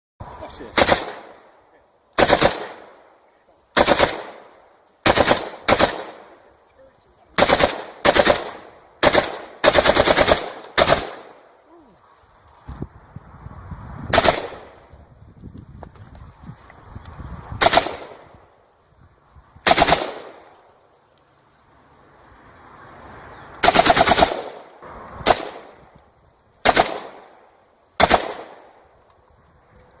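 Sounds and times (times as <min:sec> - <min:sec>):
rifle firing bursts: 0:00.8 - 0:01.4, 0:02.2 - 0:02.9, 0:03.7 - 0:06.4, 0:07.4 - 0:11.4, 0:14.1 - 0:14.8, 0:17.6 - 0:18.2, 0:19.6 - 0:20.4, 0:23.6 - 0:24.6, 0:25.2 - 0:25.7, 0:26.6 - 0:27.3, 0:28.0 - 0:28.6.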